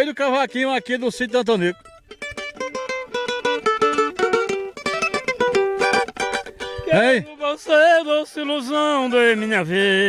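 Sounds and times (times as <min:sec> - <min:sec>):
small guitar quick plucked notes: 0:01.8 - 0:07.1.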